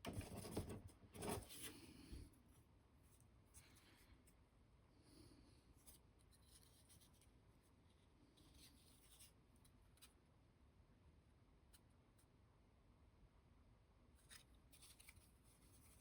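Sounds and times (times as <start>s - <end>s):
light scratching of hand tool: 0.1s - 1.9s.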